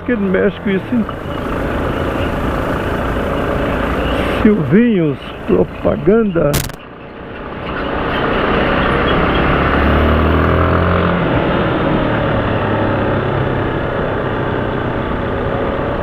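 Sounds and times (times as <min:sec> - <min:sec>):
deep engine hum from traffic: 0:00.0 - 0:16.0
wind and road noise: 0:00.0 - 0:16.0.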